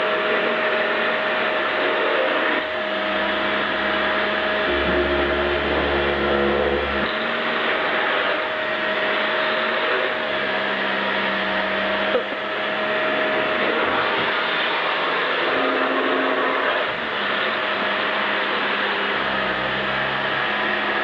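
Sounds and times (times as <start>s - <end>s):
vacuum cleaner running: 0.0s - 21.0s
deeper hum: 2.7s - 9.4s.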